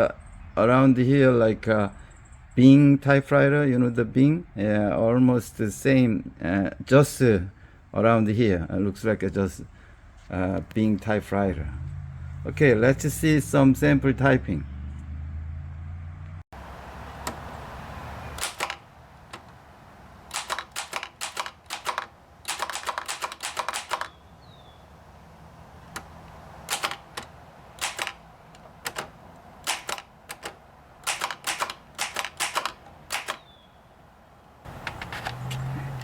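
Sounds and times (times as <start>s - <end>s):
manual typewriter typing: 18.4s - 19.4s, 20.3s - 24.2s, 25.9s - 33.4s.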